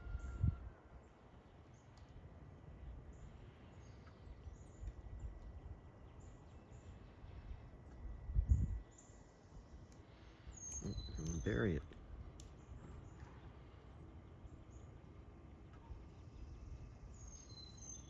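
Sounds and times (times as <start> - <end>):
high bird chirps: 10.5 - 11.7.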